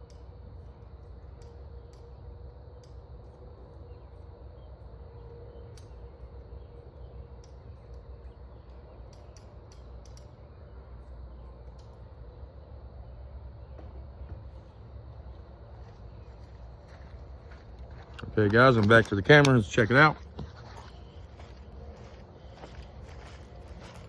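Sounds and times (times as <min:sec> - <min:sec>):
light high ticks: 0:00.0 - 0:04.3, 0:05.6 - 0:06.7, 0:07.3 - 0:10.5, 0:11.5 - 0:12.2
faint hum: 0:00.0 - 0:24.0.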